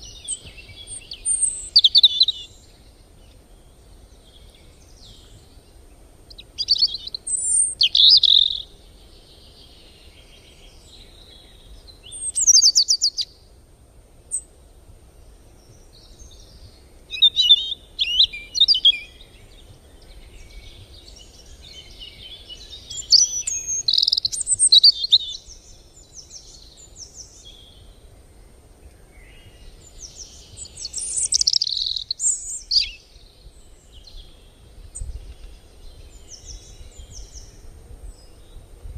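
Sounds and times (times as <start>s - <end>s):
birds chirping and singing: 0.0s - 13.4s, 15.5s - 28.2s, 28.8s - 38.7s.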